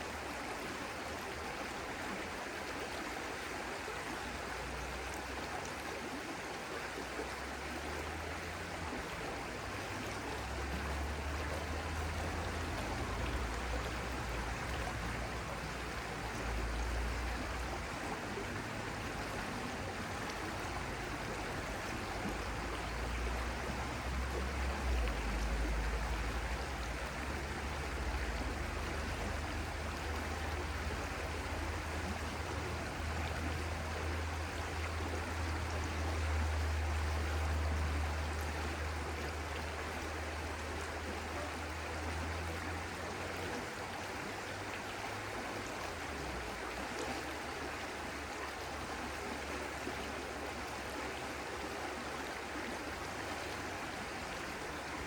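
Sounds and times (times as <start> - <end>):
stream of water flowing: 0.0 - 55.0.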